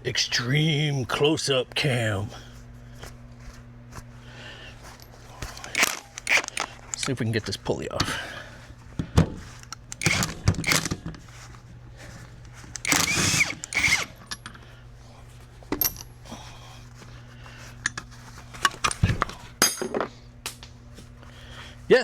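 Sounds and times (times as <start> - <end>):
steady low hum: 0.0 - 22.0
metal clicks: 5.6 - 7.2
power tool bursts: 5.7 - 7.0, 9.9 - 11.0, 12.8 - 14.2.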